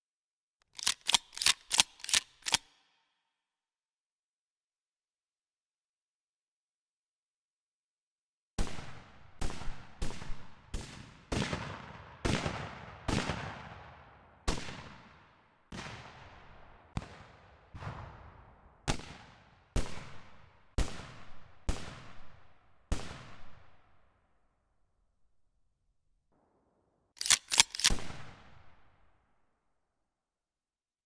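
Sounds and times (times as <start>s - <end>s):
gunshots with echoing tail: 26.4s - 28.8s.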